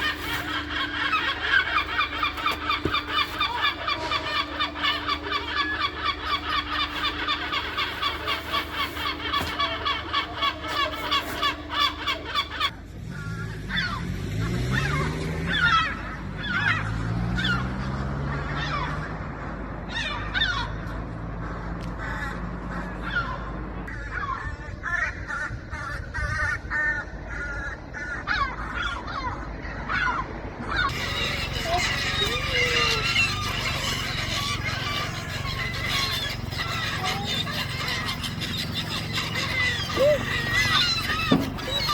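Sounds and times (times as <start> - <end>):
gulls calling: 0.0 - 12.8, 22.0 - 41.9.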